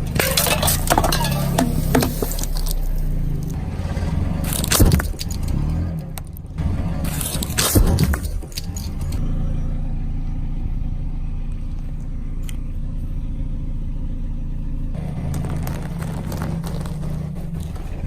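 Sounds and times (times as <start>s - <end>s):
car engine rumbling: 0.0s - 18.0s
crunch under car tyre: 14.9s - 18.0s.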